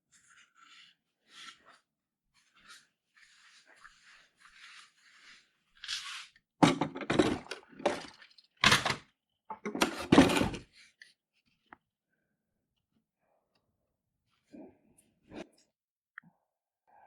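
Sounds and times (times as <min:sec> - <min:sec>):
objects knocking and clunking: 0:06.6 - 0:10.7.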